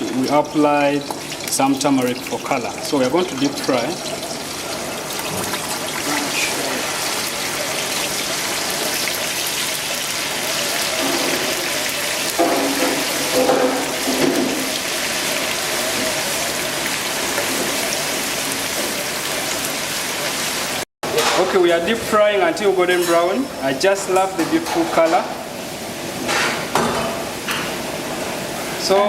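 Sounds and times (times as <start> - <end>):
chips sizzling in hot oil: 0.0 - 20.8.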